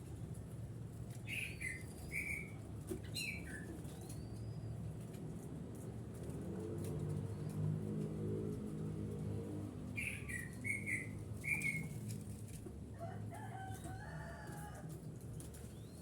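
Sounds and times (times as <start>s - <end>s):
bird calls and whistles: 1.3s - 4.6s, 10.0s - 12.0s, 15.7s - 16.0s.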